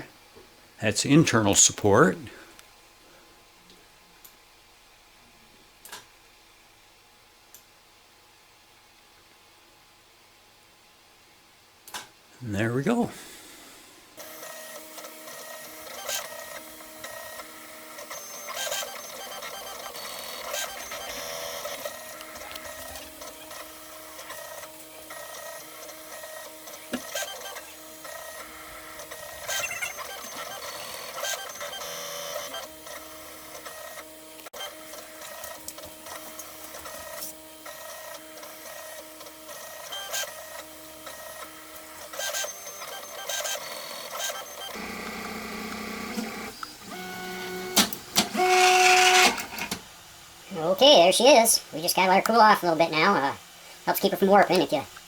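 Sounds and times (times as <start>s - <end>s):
stepper motors whining: 14.2s - 49.8s.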